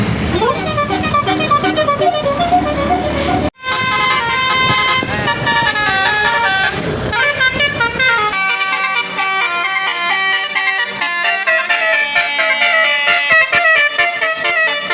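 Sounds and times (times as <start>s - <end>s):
multi-tone air horn melody: 0.4s - 14.9s.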